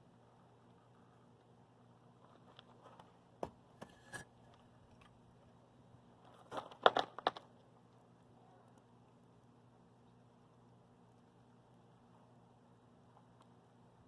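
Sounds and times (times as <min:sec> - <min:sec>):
objects knocking and scraping: 0:02.4 - 0:04.6.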